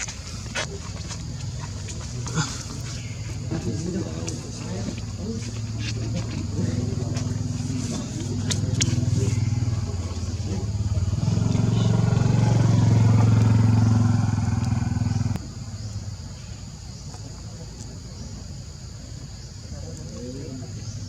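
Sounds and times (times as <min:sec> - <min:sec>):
motor engine running: 0:06.0 - 0:15.9.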